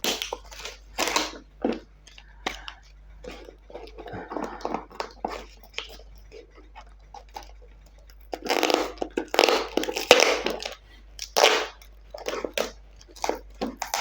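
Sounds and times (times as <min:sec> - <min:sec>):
packaging ripping: 0:00.0 - 0:01.8, 0:08.3 - 0:14.0
packaging crinkling: 0:00.0 - 0:14.0.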